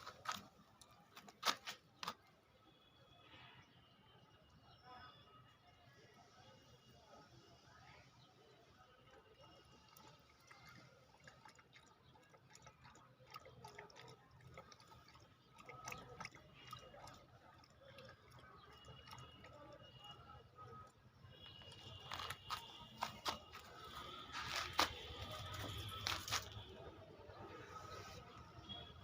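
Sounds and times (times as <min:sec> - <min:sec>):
dog urinating trickling: 0:09.0 - 0:26.8.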